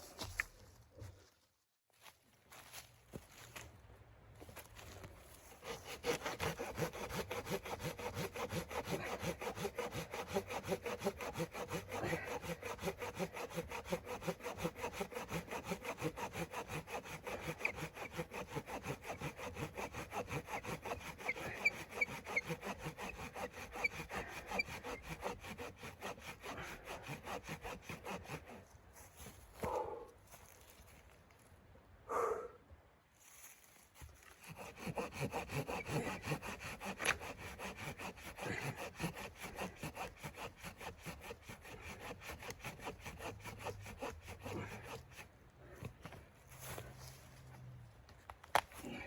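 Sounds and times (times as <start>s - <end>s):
hand saw cutting wood: 5.5s - 28.8s, 34.0s - 47.2s.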